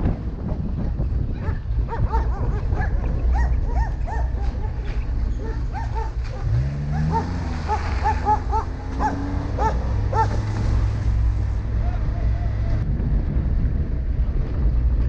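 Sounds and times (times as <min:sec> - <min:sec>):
low engine rumble: 0:00.0 - 0:15.0
dog barking in yips: 0:01.4 - 0:10.4.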